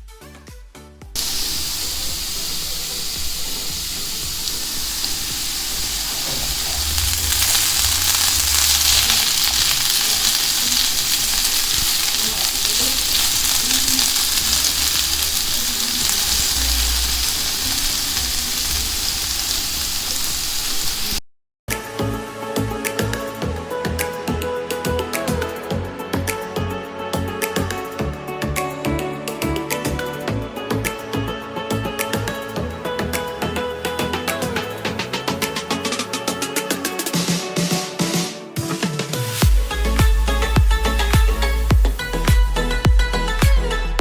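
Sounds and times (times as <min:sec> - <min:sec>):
potatoes sizzling in a skillet: 0:01.2 - 0:21.2.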